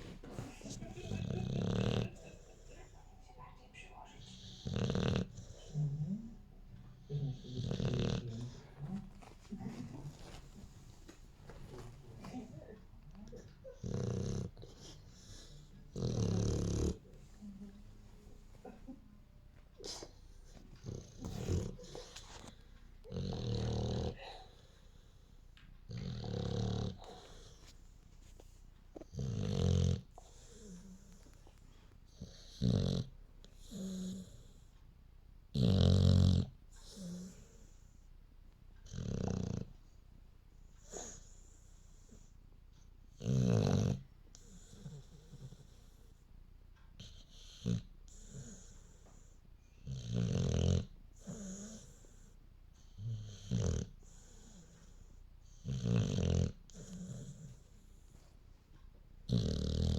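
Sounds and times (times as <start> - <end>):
soft breath with faint hum: 0.0 - 1.4, 2.0 - 35.3, 36.4 - 59.9
dog snoring: 0.0 - 2.7, 4.2 - 17.4, 19.8 - 27.7, 29.0 - 34.8, 35.5 - 38.0, 38.8 - 40.0, 40.7 - 42.3, 43.1 - 46.2, 47.0 - 58.3, 59.3 - 59.9
short snort: 19.8 - 24.2.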